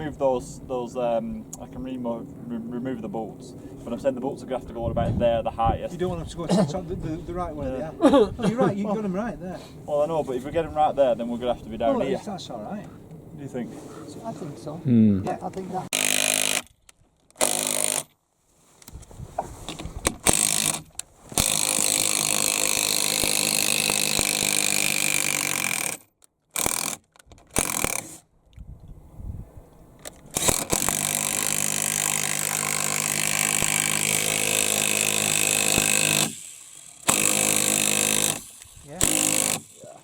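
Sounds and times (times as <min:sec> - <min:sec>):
power drill running: 0:15.9 - 0:16.6, 0:17.4 - 0:18.0, 0:21.4 - 0:26.0, 0:30.4 - 0:40.0.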